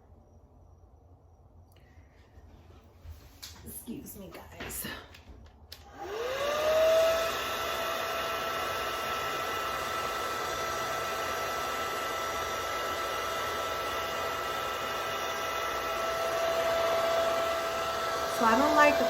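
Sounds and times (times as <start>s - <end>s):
hair dryer running: 5.7s - 19.0s.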